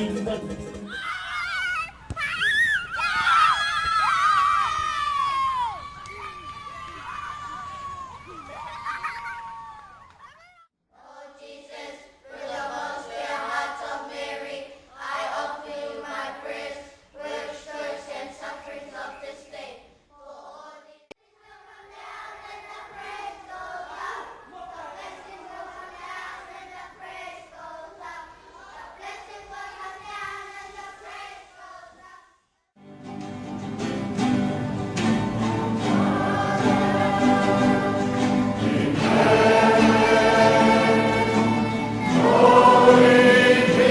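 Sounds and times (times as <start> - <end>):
choir singing: 0.0 - 0.9, 11.0 - 32.2, 34.1 - 43.9.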